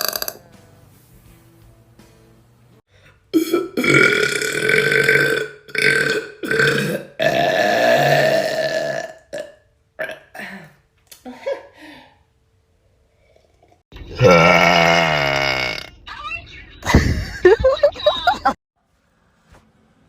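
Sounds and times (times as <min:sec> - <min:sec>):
girl belching: 0:00.0 - 0:00.4, 0:03.3 - 0:10.7, 0:14.1 - 0:15.9.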